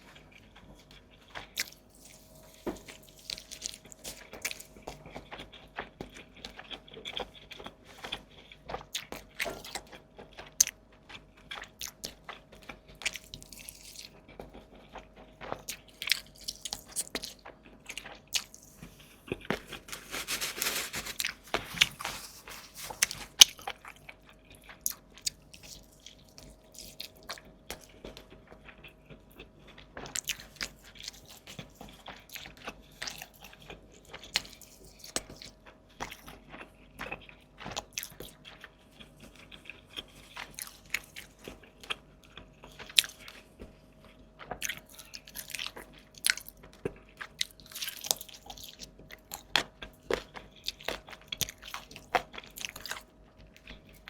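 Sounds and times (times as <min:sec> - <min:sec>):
person biting and chewing food: 0:00.2 - 0:10.8, 0:11.4 - 0:28.0, 0:29.8 - 0:43.4.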